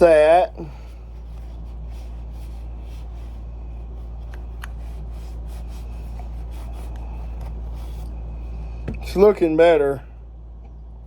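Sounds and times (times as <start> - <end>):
wipe rubbing over metal: 0.0 - 9.3
steady low hum: 0.0 - 11.0.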